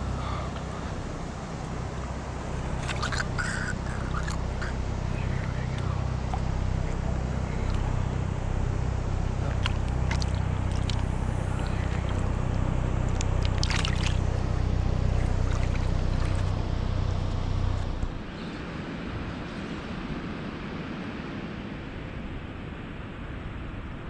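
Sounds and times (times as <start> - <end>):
boat motor running: 0.0 - 18.5.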